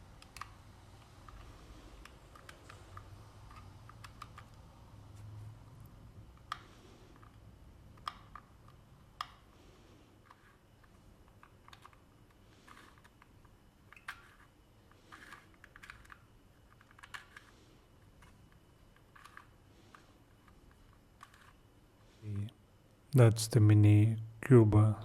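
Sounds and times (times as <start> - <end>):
plastic puzzle clicks and taps: 0.2 - 4.6, 6.4 - 9.5.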